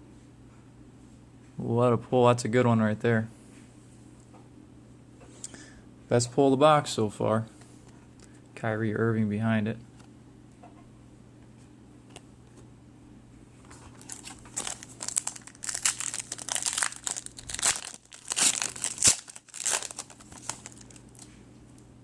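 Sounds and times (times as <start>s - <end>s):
card pack wrapper tearing and crinkling: 13.7s - 21.3s.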